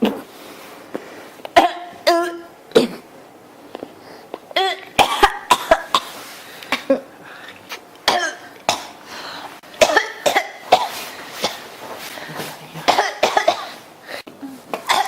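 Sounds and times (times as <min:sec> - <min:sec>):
person coughing: 0:01.6 - 0:03.1, 0:04.6 - 0:06.1, 0:08.1 - 0:09.0, 0:09.8 - 0:13.8, 0:14.5 - 0:15.0.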